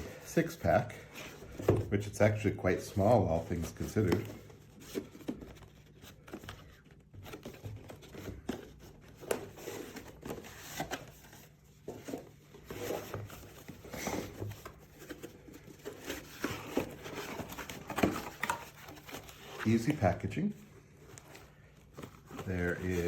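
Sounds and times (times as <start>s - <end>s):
cardboard box rustling and scraping: 3.8s - 19.9s, 21.2s - 23.0s.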